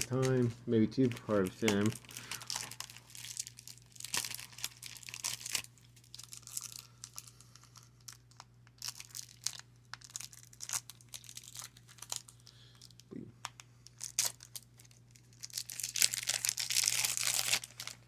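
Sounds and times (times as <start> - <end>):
cards crinkling and rustling: 0.0 - 18.0.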